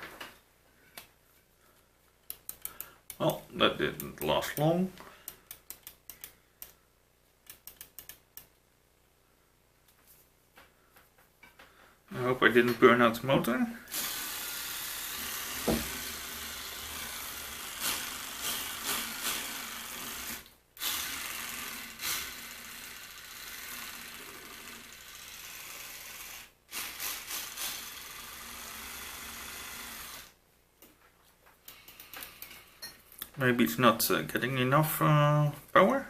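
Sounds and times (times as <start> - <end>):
small motor whirring: 13.9 - 30.4.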